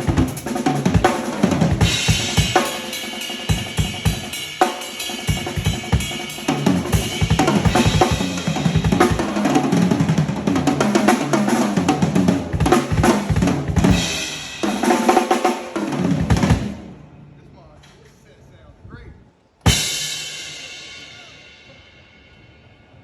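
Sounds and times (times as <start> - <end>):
drum kit playing: 0.0 - 17.1, 19.6 - 22.3.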